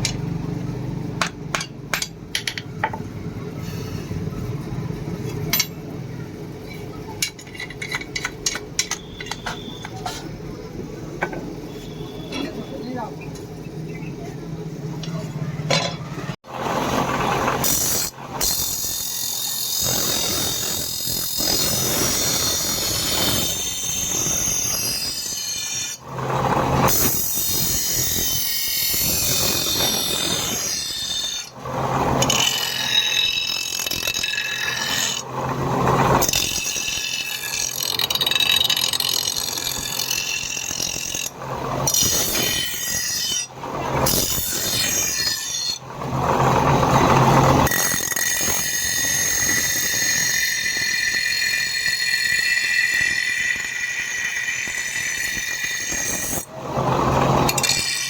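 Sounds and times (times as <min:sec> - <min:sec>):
power grinder squealing on steel: 0:06.6 - 0:10.4, 0:11.6 - 0:14.3, 0:16.1 - 0:58.0.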